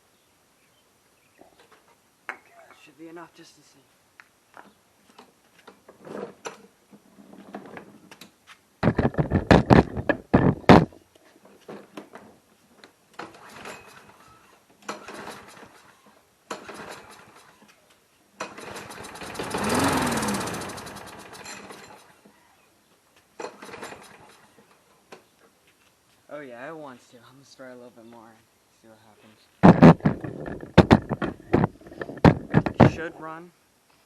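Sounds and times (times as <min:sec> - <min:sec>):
lawn mower engine running: 0:08.8 - 0:10.9, 0:14.9 - 0:17.6, 0:18.4 - 0:22.3, 0:23.4 - 0:24.7, 0:29.6 - 0:33.0
recoil starter pulls: 0:08.8 - 0:10.9, 0:13.2 - 0:17.7, 0:18.4 - 0:22.3, 0:23.4 - 0:24.7, 0:29.6 - 0:33.1.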